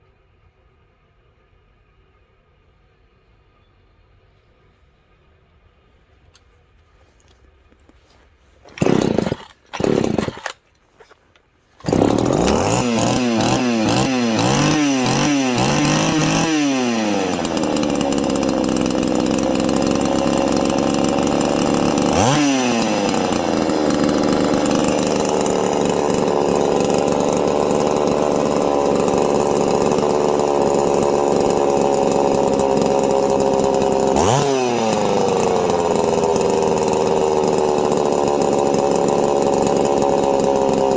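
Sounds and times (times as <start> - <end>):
chainsaw starting and revving: 8.6 - 11.2, 11.8 - 40.9.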